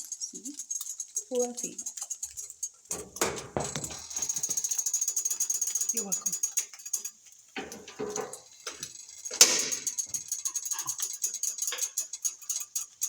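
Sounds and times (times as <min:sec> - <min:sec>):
cookware and utensils clattering: 0:02.8 - 0:13.0
sharp metal clank: 0:09.3 - 0:10.0.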